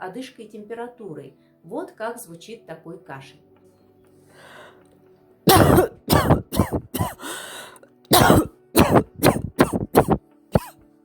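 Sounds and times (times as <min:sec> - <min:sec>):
person dry coughing: 0:05.5 - 0:10.7
breath drawn in: 0:06.3 - 0:07.8.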